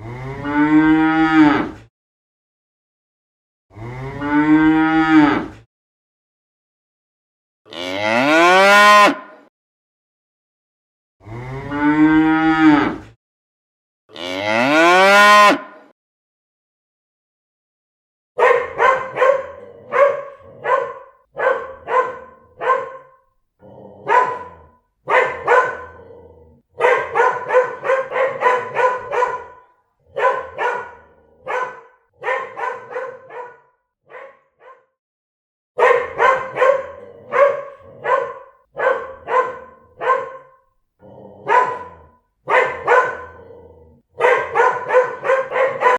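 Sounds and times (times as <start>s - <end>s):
cow mooing: 0.0s - 1.8s, 3.7s - 5.5s, 7.7s - 9.3s, 11.2s - 13.1s, 14.1s - 15.7s, 23.7s - 26.5s, 27.1s - 31.8s
dog barking: 18.4s - 23.2s, 24.0s - 26.1s, 26.8s - 35.0s, 35.8s - 40.7s, 41.4s - 45.9s.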